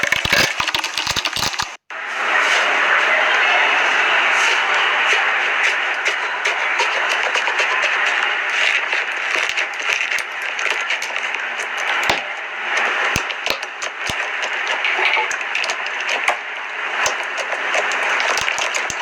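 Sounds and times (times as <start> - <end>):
slime crackling and popping: 0.0 - 1.8, 8.5 - 12.2, 12.8 - 19.0.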